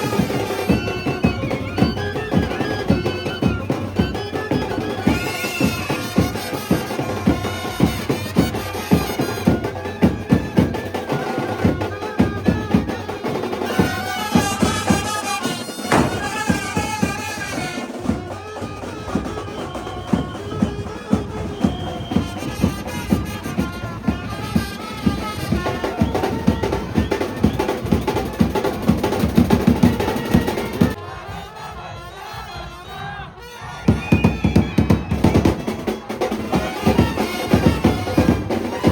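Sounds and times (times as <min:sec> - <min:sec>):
brass band playing: 0:00.0 - 0:20.1, 0:20.8 - 0:34.0, 0:35.0 - 0:38.9
fast drumbeats: 0:00.0 - 0:31.0, 0:33.9 - 0:38.9.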